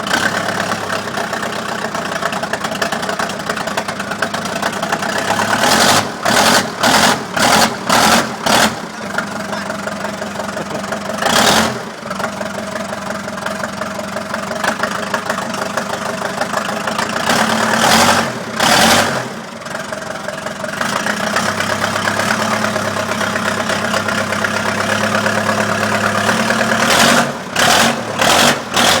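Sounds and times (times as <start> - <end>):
diesel engine running: 0.0 - 29.0.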